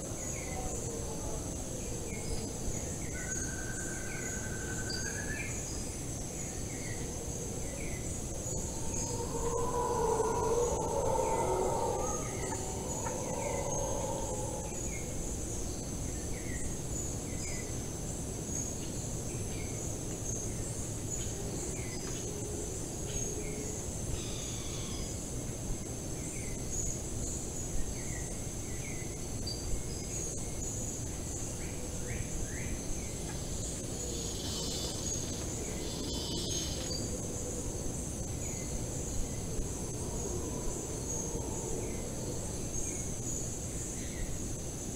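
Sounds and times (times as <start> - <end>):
high insect trill: 0.0 - 25.6, 26.2 - 44.9
bird chirping: 6.8 - 15.8
low rumble: 7.5 - 15.7.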